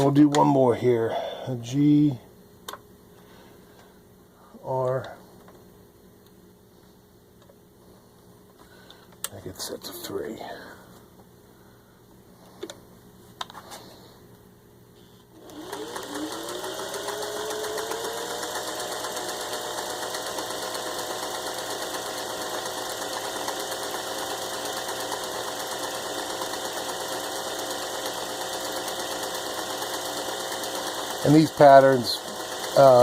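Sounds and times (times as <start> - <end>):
sewing machine running: 15.4 - 33.0.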